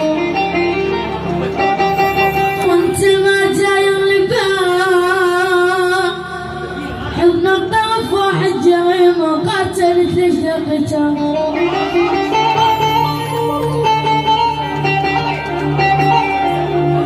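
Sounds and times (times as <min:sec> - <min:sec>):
musical accompaniment: 0:00.0 - 0:17.0
person singing with vibrato: 0:02.3 - 0:14.8.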